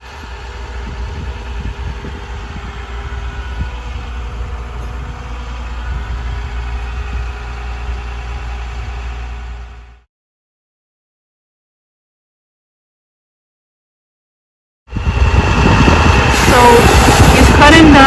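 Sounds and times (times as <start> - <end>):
vehicle engine idling: 0.0 - 10.0.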